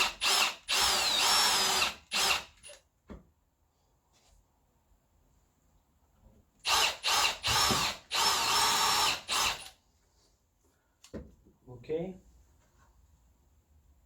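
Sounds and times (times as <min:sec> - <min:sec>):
power drill whining: 0:00.0 - 0:02.8, 0:06.6 - 0:09.8.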